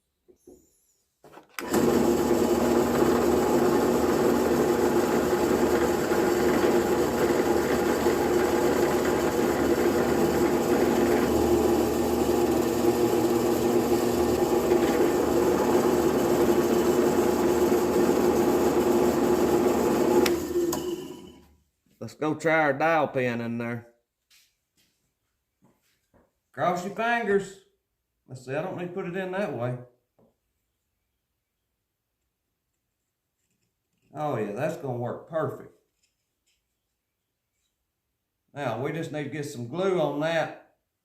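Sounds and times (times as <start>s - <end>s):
drill bit drilling wood: 1.6s - 21.2s
drill press motor humming: 1.6s - 21.4s.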